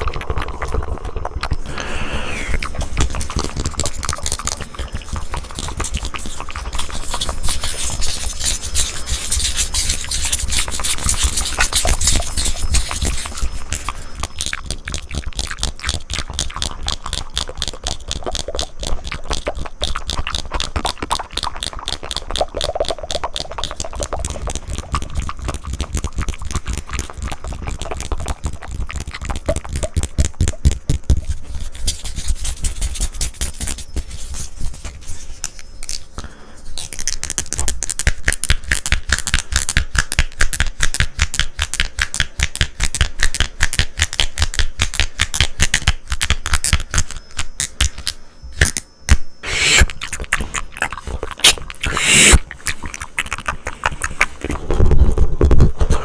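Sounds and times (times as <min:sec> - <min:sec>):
tongue fluttering: 0:00.0 - 0:30.6, 0:49.4 - 0:56.0
wet mouth clicks: 0:00.0 - 0:31.0, 0:36.8 - 0:54.8.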